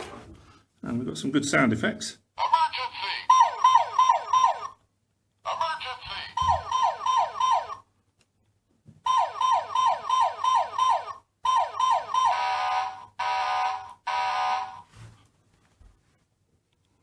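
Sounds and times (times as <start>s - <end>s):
toy siren whooping: 3.3s - 4.8s, 6.4s - 7.9s, 9.0s - 14.8s.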